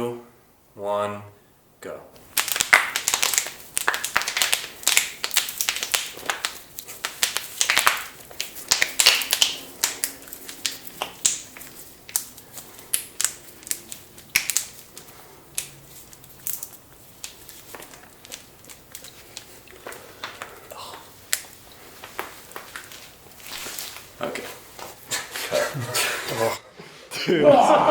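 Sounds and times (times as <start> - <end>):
knuckles cracking: 2.2 - 24.1.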